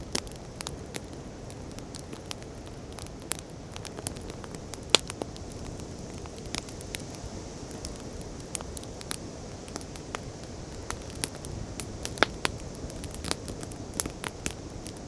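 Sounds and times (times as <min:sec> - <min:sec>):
wood fire crackling and popping: 0:00.0 - 0:15.0.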